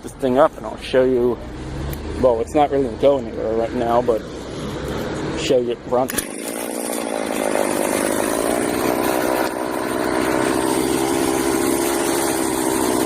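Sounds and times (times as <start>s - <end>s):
chainsaw engine running: 6.0s - 13.0s.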